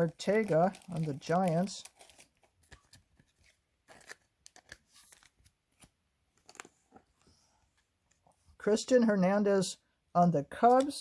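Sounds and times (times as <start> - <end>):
trading cards clicking and rustling: 0.0 - 7.0.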